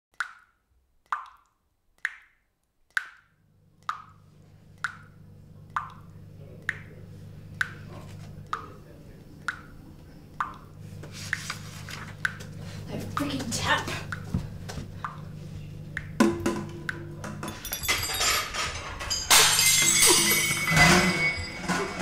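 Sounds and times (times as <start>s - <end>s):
water dripping into a sink: 0.1s - 17.5s.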